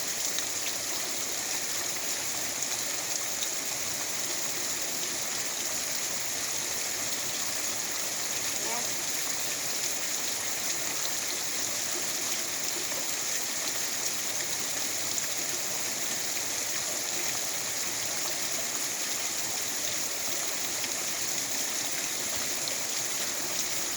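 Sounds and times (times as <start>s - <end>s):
rain hissing: 6.7s - 11.2s.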